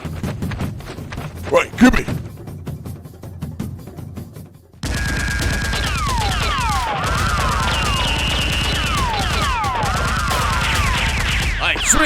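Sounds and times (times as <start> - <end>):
automatic gunfire: 4.8 - 12.0
falling whistles: 4.9 - 12.0.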